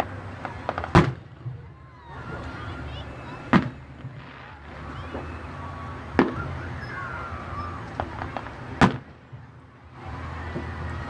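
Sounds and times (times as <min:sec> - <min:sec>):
small firework pops: 0:00.0 - 0:01.7, 0:03.3 - 0:07.0, 0:07.8 - 0:09.5
fireworks bangs: 0:00.0 - 0:11.0.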